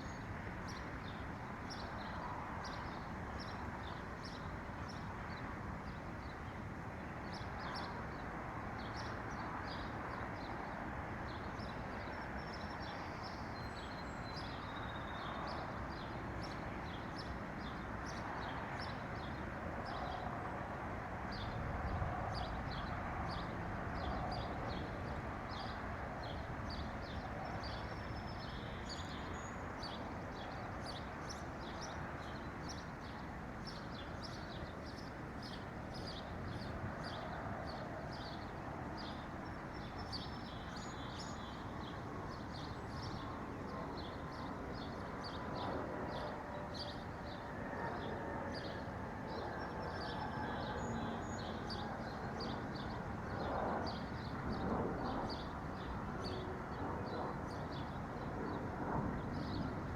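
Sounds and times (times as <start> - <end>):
small songbirds chirping: 25.5 - 47.4.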